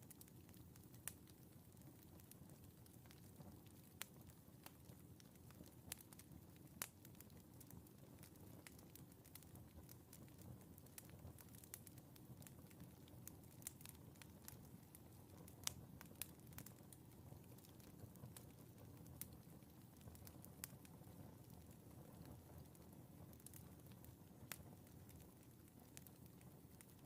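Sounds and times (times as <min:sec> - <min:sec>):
fire crackling: 0:00.0 - 0:27.0
fire popping: 0:00.0 - 0:27.0.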